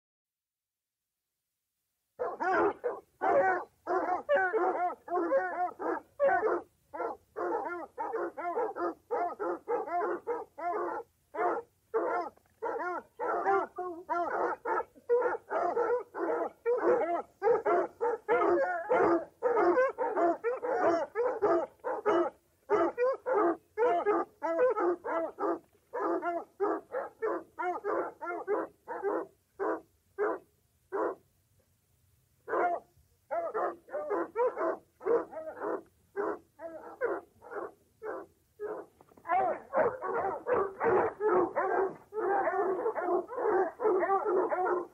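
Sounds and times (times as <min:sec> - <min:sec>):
dog barking rapidly: 0:02.2 - 0:30.4, 0:32.5 - 0:44.9.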